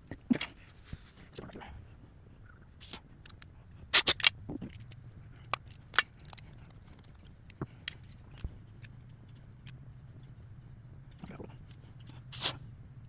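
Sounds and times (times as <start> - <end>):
metal tools clicking and clinking: 3.2 - 9.8.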